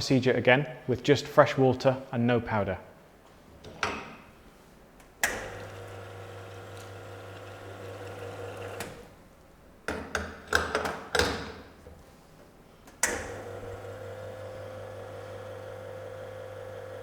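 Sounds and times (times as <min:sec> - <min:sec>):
espresso machine pump humming: 0:05.4 - 0:09.1, 0:13.3 - 0:17.0.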